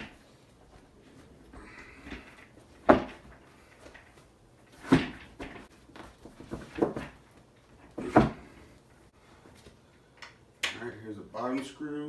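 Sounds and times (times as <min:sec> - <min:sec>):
chair parts clunking and knocking: 0:00.0 - 0:09.0.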